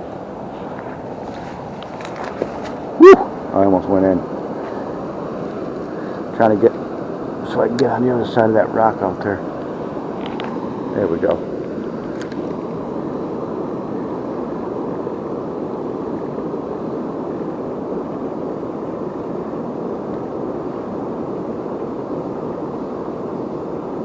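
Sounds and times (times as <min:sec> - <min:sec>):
light click: 0:12.1 - 0:12.4.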